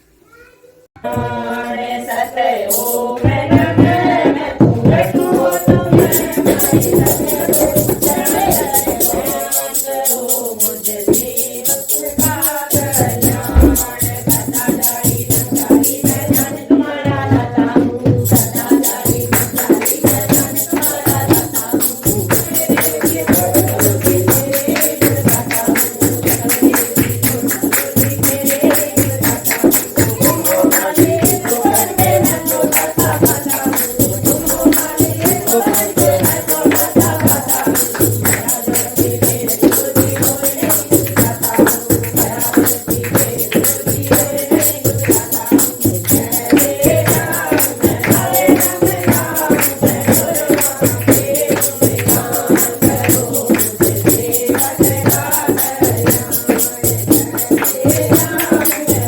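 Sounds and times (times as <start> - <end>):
rhythmic percussion: 1.0 - 59.0
voices singing: 1.0 - 59.0.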